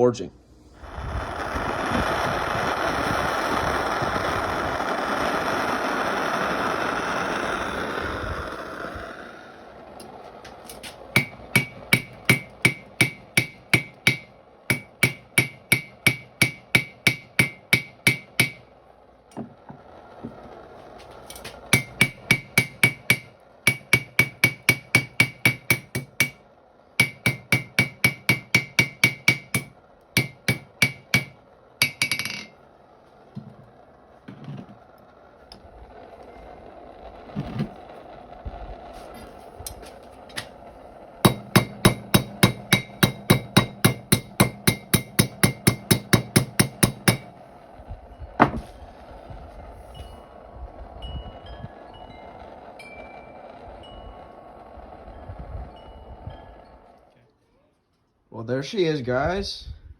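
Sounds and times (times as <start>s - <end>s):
loud steady noise: 0.4s - 49.7s
hammer ringing on anvil: 11.2s - 18.6s, 21.8s - 26.4s, 27.0s - 32.5s, 41.3s - 47.3s.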